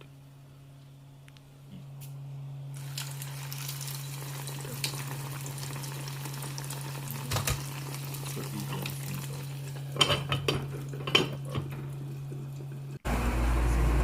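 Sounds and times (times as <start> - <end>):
meat frying in hot oil: 2.8 - 13.0.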